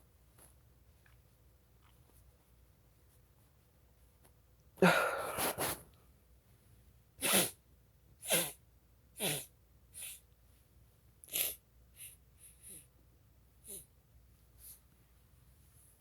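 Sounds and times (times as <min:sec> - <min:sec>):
person sneezing: 0:04.8 - 0:05.9, 0:07.2 - 0:07.6.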